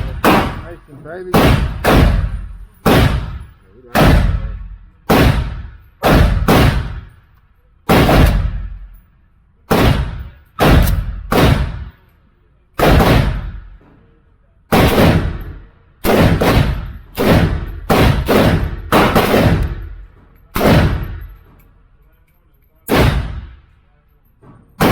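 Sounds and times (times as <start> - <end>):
semi-automatic gunshots: 0.0 - 7.2, 7.9 - 8.9, 9.7 - 12.0, 12.8 - 13.8, 14.7 - 21.4, 22.9 - 23.7.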